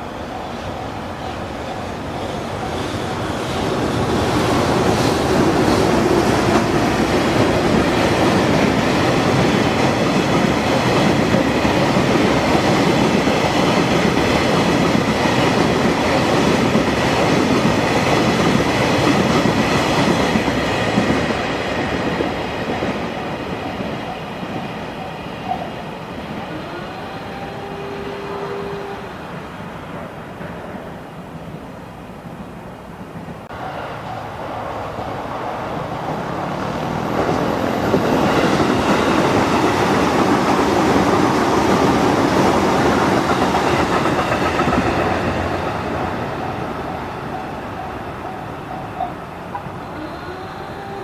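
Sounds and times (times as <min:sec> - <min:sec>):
train wheels clattering over rails: 0:02.0 - 0:25.6, 0:35.0 - 0:48.5.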